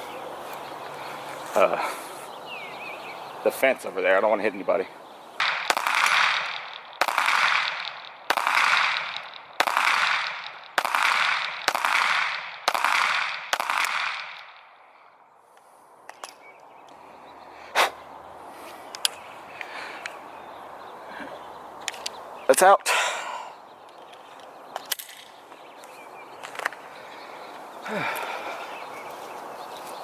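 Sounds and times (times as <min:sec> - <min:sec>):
pistol shots echoing: 0:05.4 - 0:14.8
sharp crack: 0:05.4 - 0:14.8, 0:24.8 - 0:25.4.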